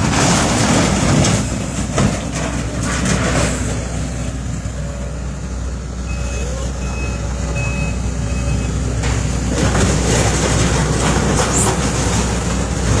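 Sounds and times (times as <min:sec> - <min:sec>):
demolition machinery rumble: 0:00.0 - 0:13.0
short beeping: 0:06.1 - 0:08.8.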